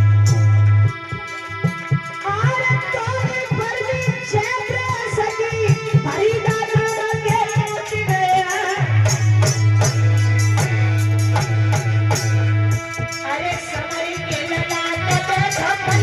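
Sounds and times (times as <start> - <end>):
woman singing: 2.2 - 9.1, 13.2 - 16.0
hand drum beat: 6.5 - 16.0.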